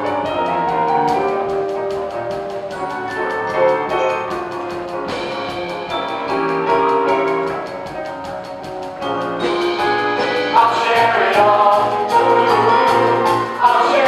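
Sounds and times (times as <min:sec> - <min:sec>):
orchestra playing: 0:00.0 - 0:14.0.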